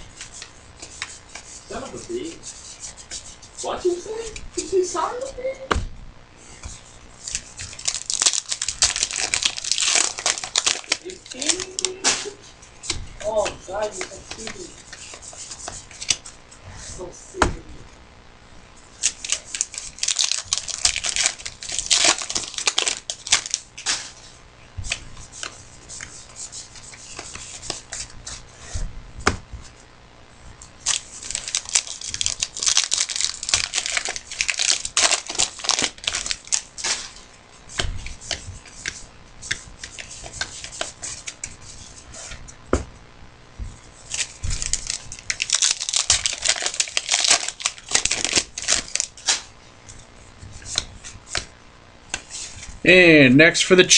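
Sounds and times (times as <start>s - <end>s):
card wrappers tearing and crinkling: 7.2s - 12.5s, 19.0s - 24.3s, 30.8s - 39.0s, 44.0s - 49.5s
cards clicking and rustling: 7.2s - 16.3s, 19.0s - 28.1s, 30.8s - 41.6s, 44.0s - 50.0s.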